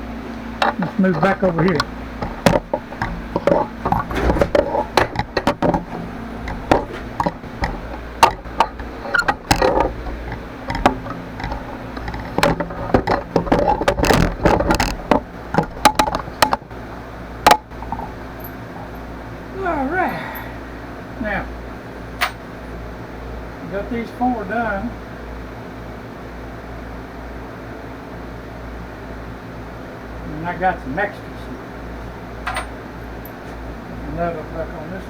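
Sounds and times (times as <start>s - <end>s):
metal parts and tools clinking: 0.6s - 16.7s, 17.5s - 19.1s.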